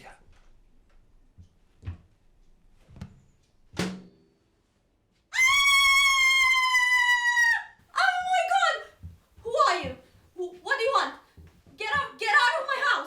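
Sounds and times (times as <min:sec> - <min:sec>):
woman screaming: 0:05.4 - 0:08.8.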